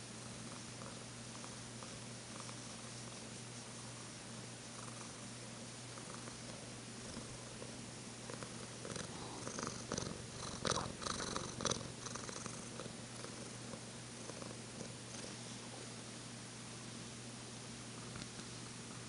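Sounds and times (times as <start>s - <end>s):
cat purring: 0.2s - 16.0s.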